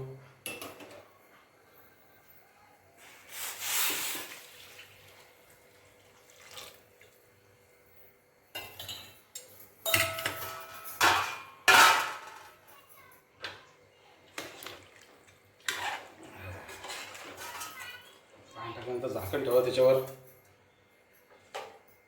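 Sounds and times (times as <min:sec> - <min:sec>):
water pouring into metal pot: 0:03.3 - 0:07.2
metal utensils clanking on pot: 0:08.6 - 0:12.6, 0:15.7 - 0:18.1.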